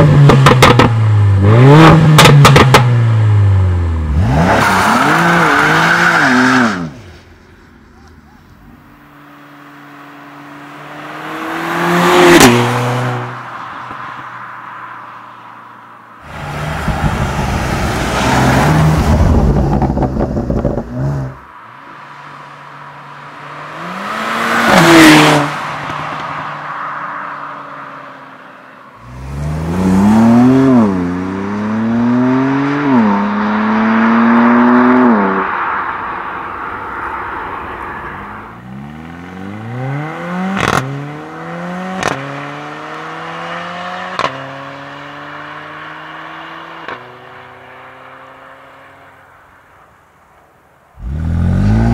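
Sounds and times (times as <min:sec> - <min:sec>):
sports car engine accelerating: 0:29.0 - 0:35.4, 0:51.0 - 0:51.9.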